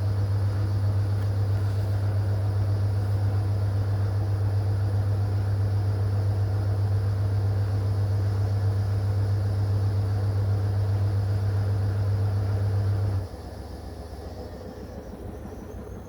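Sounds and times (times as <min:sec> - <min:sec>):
washing machine humming: 0:00.0 - 0:16.0.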